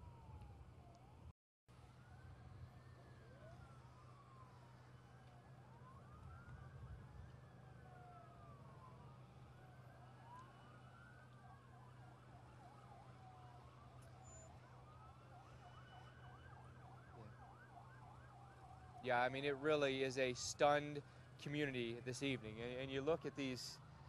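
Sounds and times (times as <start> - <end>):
faint sirens wailing: 0.0 - 24.0
siren yelping: 2.7 - 19.4.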